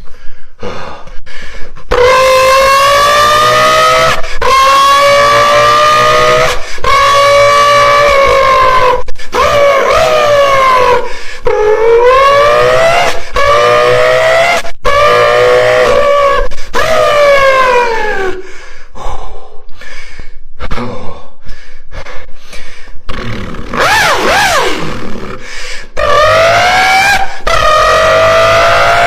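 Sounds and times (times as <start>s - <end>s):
beatboxer imitating car engine: 1.9s - 17.8s, 23.0s - 29.0s.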